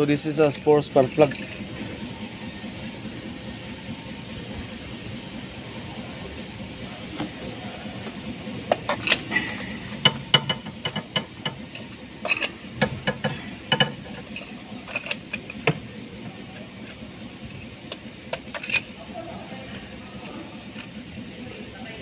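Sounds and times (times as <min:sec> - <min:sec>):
steady hiss: 0:00.1 - 0:11.0.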